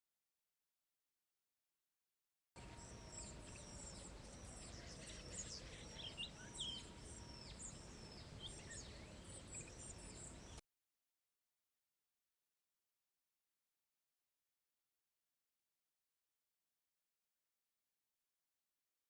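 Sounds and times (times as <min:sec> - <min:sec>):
faint outdoor hiss: 0:02.6 - 0:10.6
small birds calling: 0:02.6 - 0:10.6.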